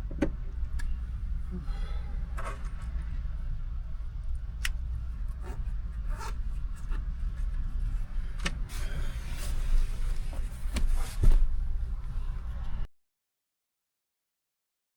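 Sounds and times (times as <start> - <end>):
steady low rumble: 0.0 - 12.9.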